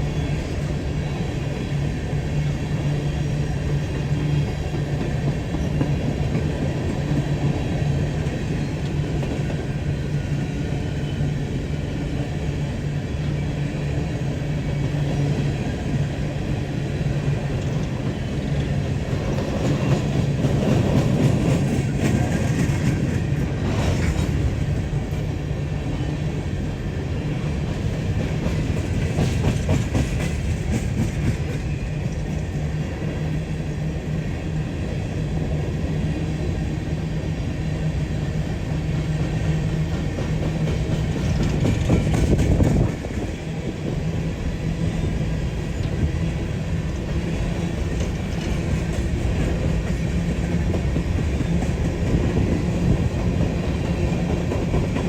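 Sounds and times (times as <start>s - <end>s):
diesel locomotive humming: 0.0s - 55.0s
rumble and rattle: 39.8s - 43.4s.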